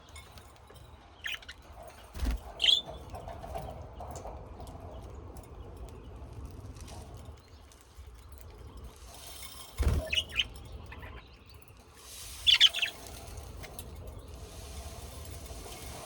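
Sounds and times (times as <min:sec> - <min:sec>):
high bird chirps: 0:01.2 - 0:03.0, 0:09.1 - 0:16.0.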